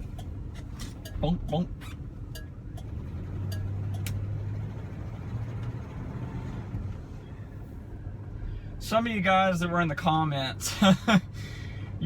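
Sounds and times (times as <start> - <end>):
car engine and road drone: 0.0 - 12.0.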